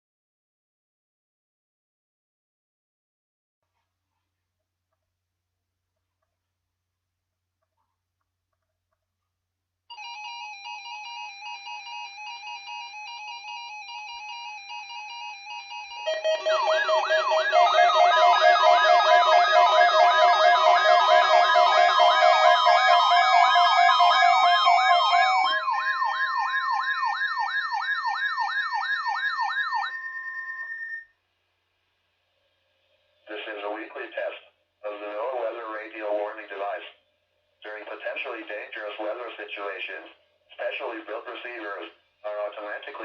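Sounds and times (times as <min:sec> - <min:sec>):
sirens sweeping up and down: 0:10.8 - 0:31.1
rapid warbling tone: 0:16.1 - 0:26.9.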